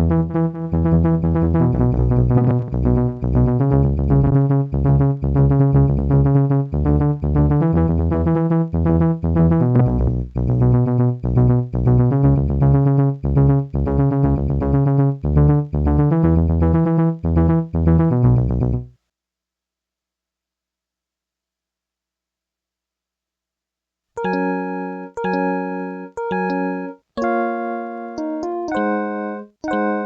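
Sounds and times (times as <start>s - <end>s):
synth melody with delay: 0.0s - 18.8s, 24.2s - 30.0s
pulsing bass line: 0.0s - 18.9s.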